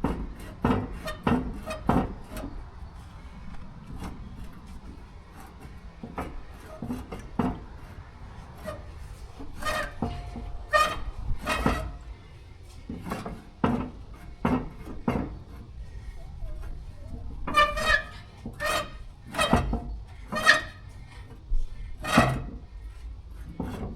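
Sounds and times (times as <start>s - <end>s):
metal knocks and clanks: 0.0s - 12.1s, 12.8s - 22.8s.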